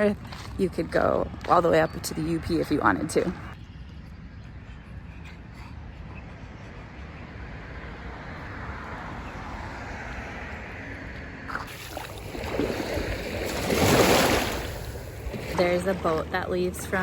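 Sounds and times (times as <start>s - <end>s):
waves washing onto shore: 11.7s - 16.4s.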